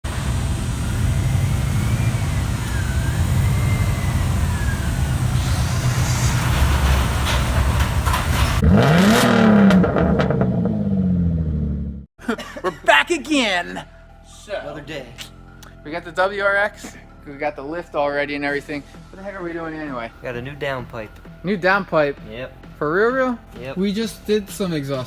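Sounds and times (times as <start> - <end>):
car engine revving: 0.0 - 12.1.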